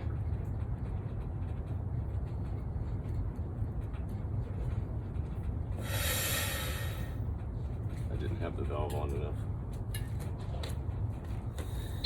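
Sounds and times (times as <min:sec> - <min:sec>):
propane forge burner rumbling: 0:00.0 - 0:12.0
loud hiss: 0:05.8 - 0:07.2.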